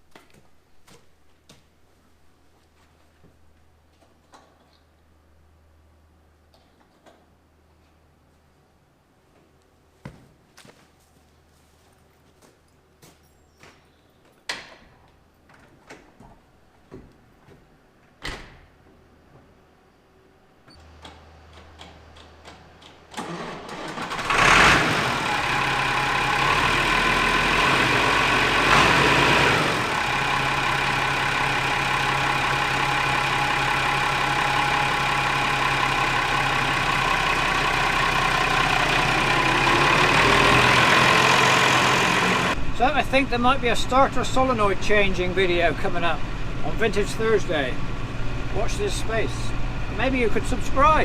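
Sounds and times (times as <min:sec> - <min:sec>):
tractor engine cranking and idling: 0:20.7 - 0:51.0
tractor engine revving: 0:23.1 - 0:51.0.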